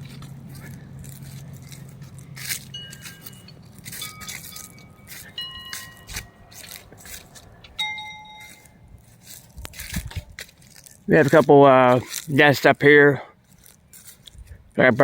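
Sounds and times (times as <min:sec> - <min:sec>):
footsteps crunching on trail: 0:00.0 - 0:15.0
short metallic clinks: 0:00.2 - 0:09.4.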